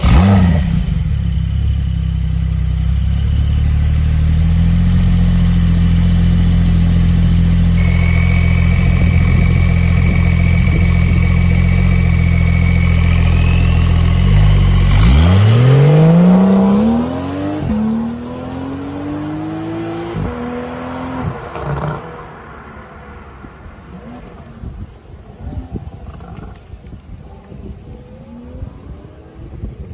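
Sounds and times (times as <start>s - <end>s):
car engine idling and revving: 0.0s - 29.9s.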